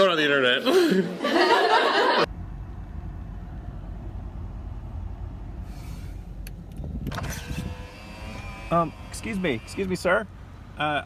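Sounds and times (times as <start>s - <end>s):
car engine idling: 2.3s - 11.0s.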